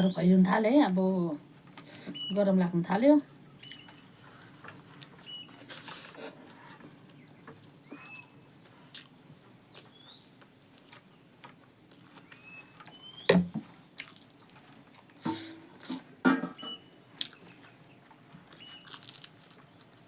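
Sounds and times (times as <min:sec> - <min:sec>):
chewing with wet smacks: 0:08.8 - 0:11.1, 0:13.9 - 0:15.2, 0:17.2 - 0:20.0.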